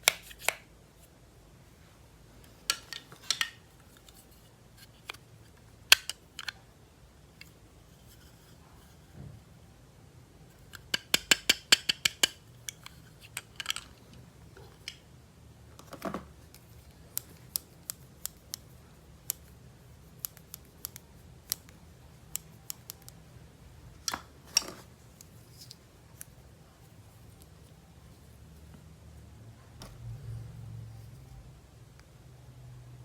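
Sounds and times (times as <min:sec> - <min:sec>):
plastic toys and packaging clicking: 0:00.0 - 0:00.7, 0:02.5 - 0:06.6, 0:10.6 - 0:15.0, 0:15.8 - 0:23.2.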